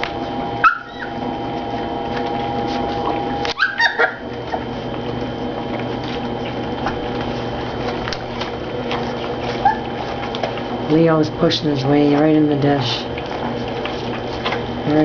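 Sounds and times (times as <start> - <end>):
puppies eating from dishes: 0.0 - 15.0
puppy squeaks: 0.6 - 1.2, 3.5 - 4.2, 9.6 - 9.9.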